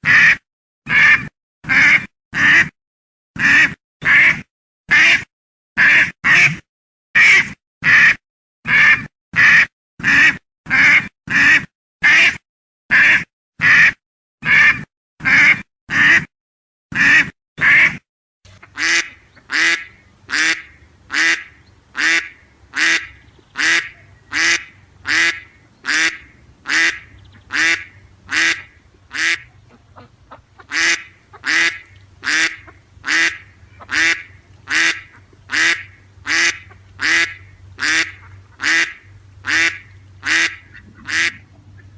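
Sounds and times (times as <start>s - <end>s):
duck quacking: 0.0s - 2.8s, 3.4s - 6.6s, 7.2s - 16.3s, 16.9s - 41.9s
low steady hum: 18.5s - 41.9s.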